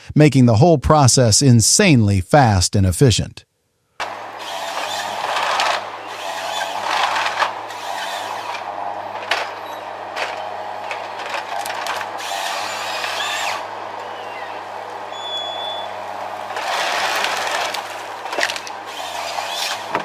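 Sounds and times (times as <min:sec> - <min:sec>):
heavy engine running: 0:04.0 - 0:20.0.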